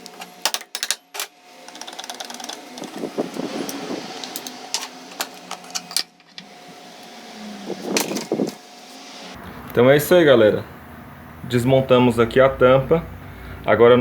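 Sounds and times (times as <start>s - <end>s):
metal tools clicking and knocking: 0.0s - 3.0s.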